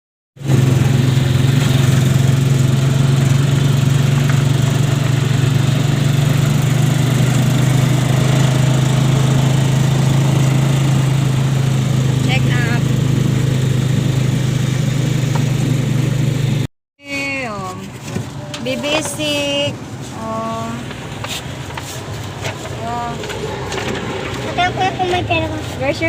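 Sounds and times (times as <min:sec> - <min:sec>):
engine running steadily: 0:00.4 - 0:26.0.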